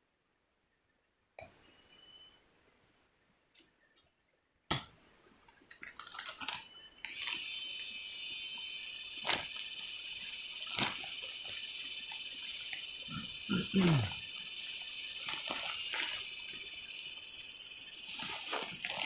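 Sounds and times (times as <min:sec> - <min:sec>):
high-pitched animal drone: 0:07.2 - 0:19.0.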